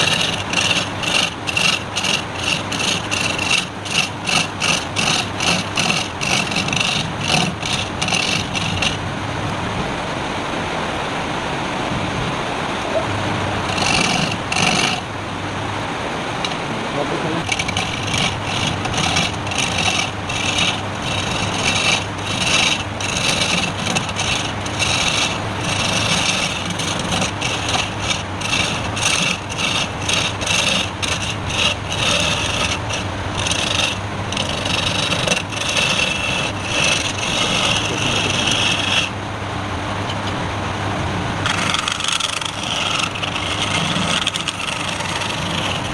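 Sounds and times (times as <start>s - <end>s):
turning tool cutting wood: 0.0s - 9.0s, 13.5s - 15.2s, 16.4s - 16.7s, 17.4s - 39.2s, 41.4s - 45.9s
wood lathe running: 0.0s - 9.2s, 13.3s - 15.2s, 16.3s - 16.7s, 17.4s - 39.2s, 41.4s - 45.9s.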